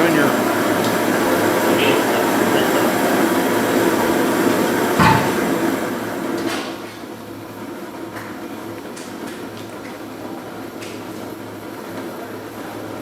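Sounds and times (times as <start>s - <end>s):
gas heater burner and fan: 0.0s - 13.0s
sharp knock: 5.0s - 5.5s.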